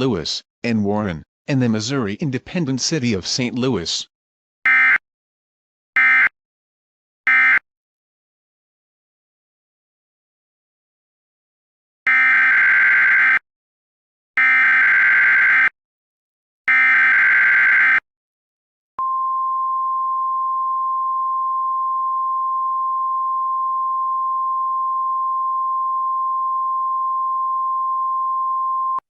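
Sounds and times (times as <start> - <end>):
steady single-pitch alarm tone: 4.7 - 5.0, 6.0 - 6.3, 7.3 - 7.6, 12.1 - 13.4, 14.4 - 15.7, 16.7 - 18.0.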